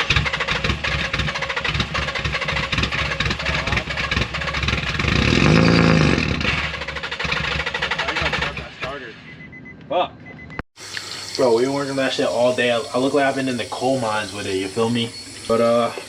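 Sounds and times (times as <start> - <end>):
car engine cranking and running: 0.0 - 9.7.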